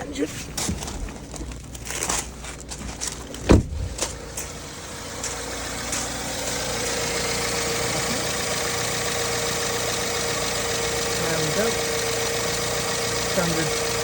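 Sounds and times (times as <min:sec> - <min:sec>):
car engine idling: 0:00.0 - 0:14.0
loud thump: 0:03.4 - 0:04.2.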